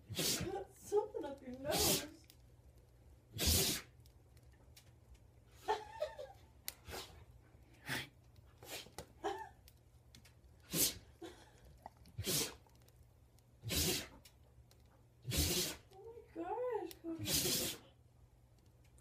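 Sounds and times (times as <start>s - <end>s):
dog sneezing: 0.0s - 0.6s, 1.7s - 2.1s, 3.3s - 4.0s, 6.8s - 7.2s, 8.6s - 8.9s, 10.6s - 11.1s, 12.2s - 12.7s, 13.6s - 14.3s, 15.2s - 15.9s, 17.2s - 18.0s.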